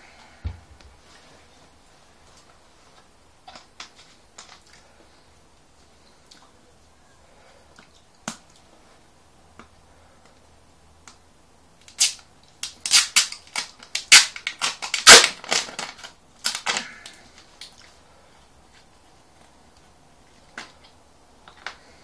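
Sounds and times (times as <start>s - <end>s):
plastic bottle cracking and popping: 11.8s - 17.8s.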